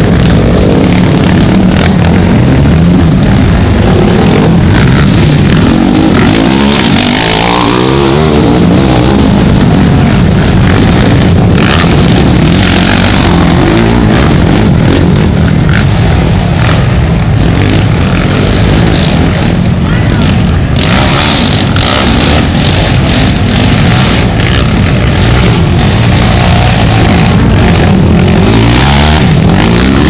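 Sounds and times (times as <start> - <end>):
atv engines revving: 0.0 - 30.0.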